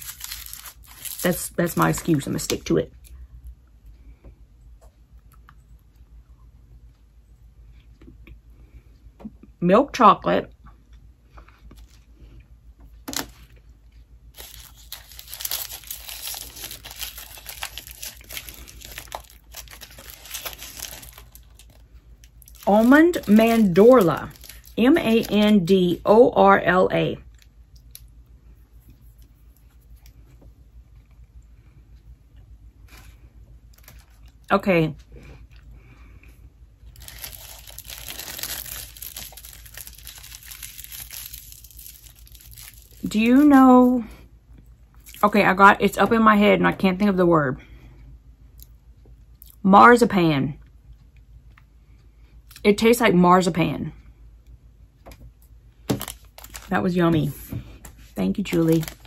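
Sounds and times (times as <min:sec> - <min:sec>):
wrapper crinkling and tearing: 0:00.0 - 0:02.4, 0:13.1 - 0:13.5, 0:14.3 - 0:25.7, 0:33.7 - 0:34.5, 0:36.9 - 0:43.9, 0:55.9 - 0:57.4, 0:58.2 - 0:59.0.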